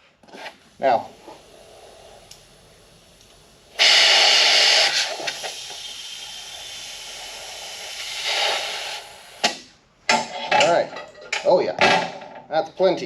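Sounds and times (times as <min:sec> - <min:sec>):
compressed air hissing: 0:00.2 - 0:09.8.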